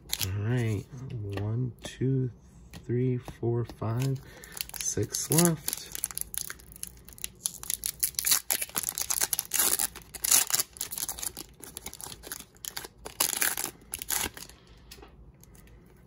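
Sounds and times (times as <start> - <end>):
foil wrapper tearing and crinkling: 4.0 - 14.5.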